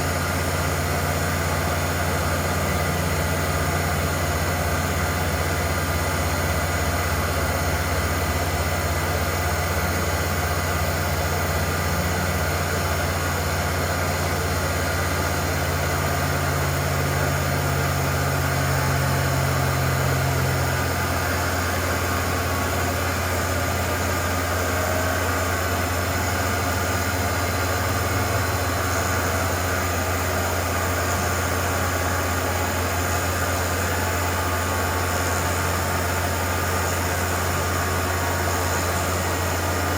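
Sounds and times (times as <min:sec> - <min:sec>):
milling machine humming and whining: 0:00.0 - 0:39.9.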